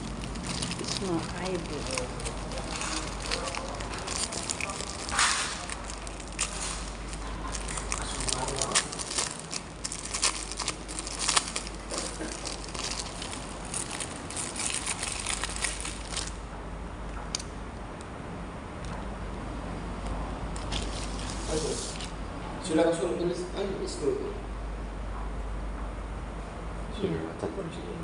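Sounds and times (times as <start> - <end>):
plastic packaging crinkling: 0.0 - 16.4, 20.6 - 22.1.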